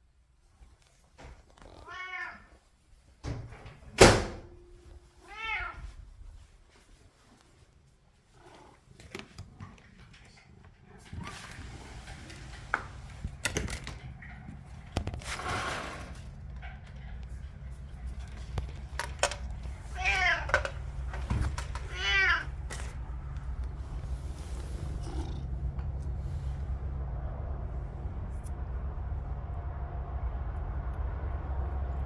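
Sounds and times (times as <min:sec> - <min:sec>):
cat meowing: 0:01.8 - 0:02.6, 0:05.1 - 0:06.0, 0:19.4 - 0:23.1
rustling: 0:04.6 - 0:26.8.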